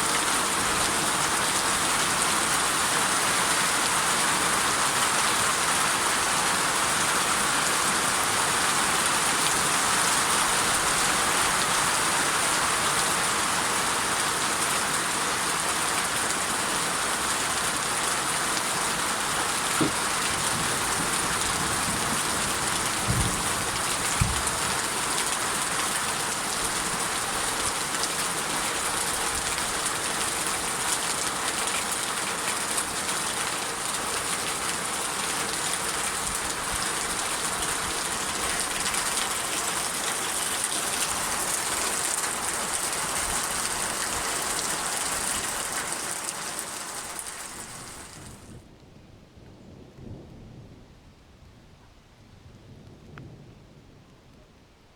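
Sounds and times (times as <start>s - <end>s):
heavy steady rain: 0.0s - 54.9s
dull knocks of heavy drops: 19.8s - 20.1s, 23.0s - 24.7s.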